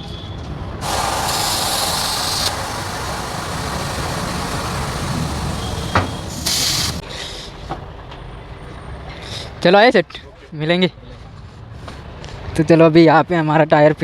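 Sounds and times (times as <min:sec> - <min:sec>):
compressed air hissing: 0:00.8 - 0:07.0.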